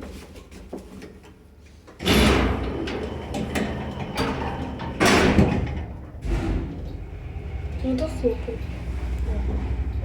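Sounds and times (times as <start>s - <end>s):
lift doors clattering: 2.0s - 10.0s.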